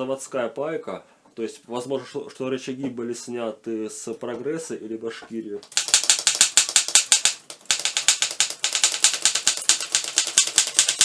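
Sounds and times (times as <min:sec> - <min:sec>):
typewriter keystrokes: 0:05.6 - 0:11.0.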